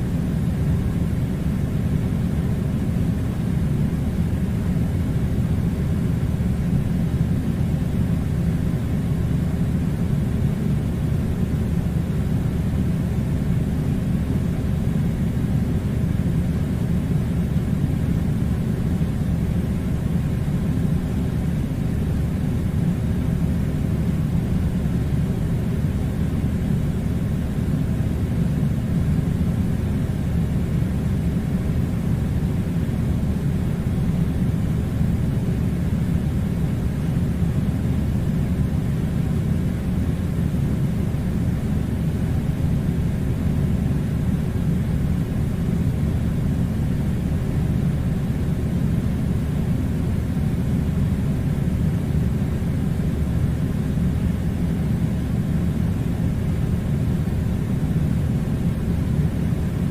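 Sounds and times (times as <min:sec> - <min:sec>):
air conditioner humming: 0:00.0 - 0:59.9.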